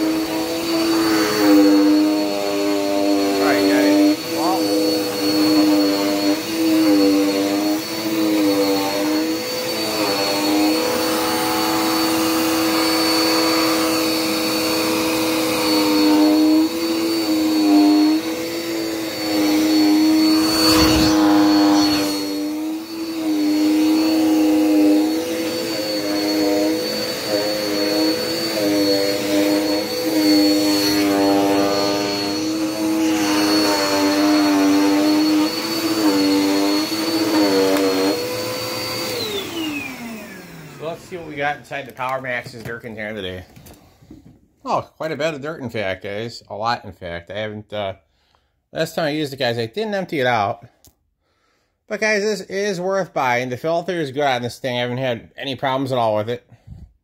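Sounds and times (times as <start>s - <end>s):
vacuum cleaner motor whine: 0.0s - 44.3s.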